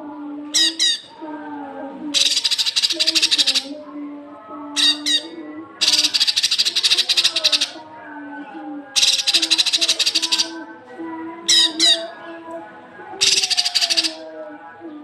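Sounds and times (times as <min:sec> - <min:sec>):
songbird chattering rattles: 0:02.2 - 0:03.8, 0:04.8 - 0:07.8, 0:09.0 - 0:10.6, 0:13.2 - 0:14.2.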